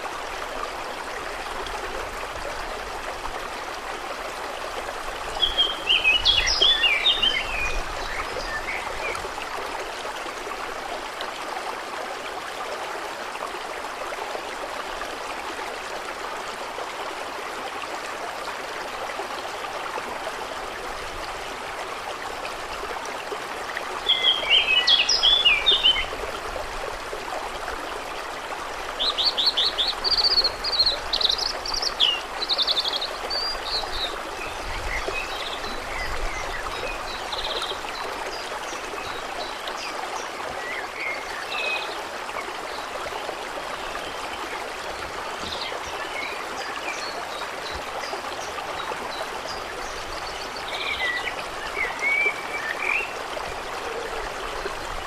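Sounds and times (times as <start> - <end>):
running water rushing: 0.0 - 55.0
birds singing: 5.3 - 9.2, 24.0 - 26.1.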